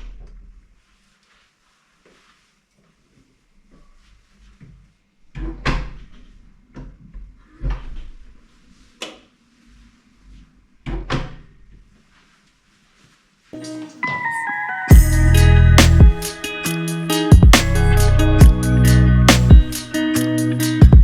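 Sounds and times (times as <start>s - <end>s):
doors or cupboards opening and shutting: 5.4s - 6.2s, 10.9s - 11.5s
music: 13.6s - 21.0s.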